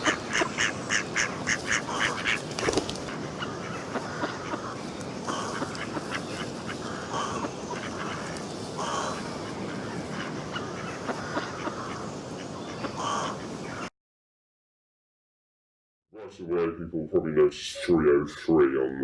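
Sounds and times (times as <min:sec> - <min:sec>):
duck quacking: 0:00.0 - 0:02.4, 0:03.1 - 0:09.2, 0:10.2 - 0:12.0
background hiss with clicks: 0:08.2 - 0:08.5.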